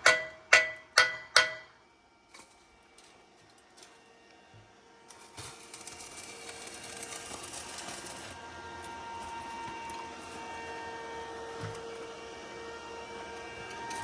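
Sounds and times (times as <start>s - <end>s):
electric arc welder crackling: 5.1s - 8.6s.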